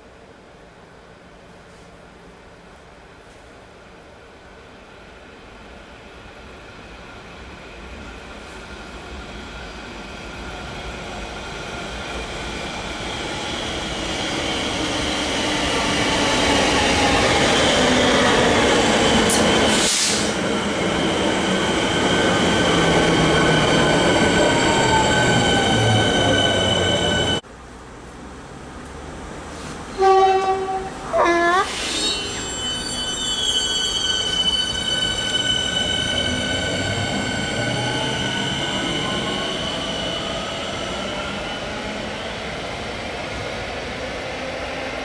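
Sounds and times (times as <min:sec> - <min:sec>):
short hiss: 0:19.3 - 0:20.4
high-pitched whines: 0:31.0 - 0:40.4.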